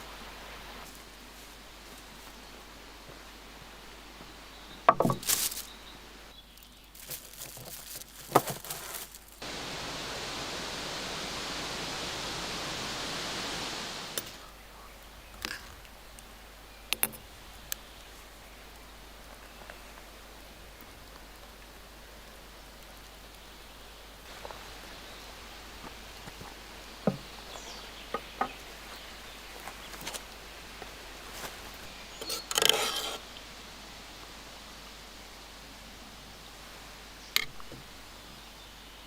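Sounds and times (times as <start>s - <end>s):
steady rushing hiss: 0.0s - 7.3s, 9.0s - 39.0s
rustling: 5.0s - 5.8s, 6.5s - 9.5s.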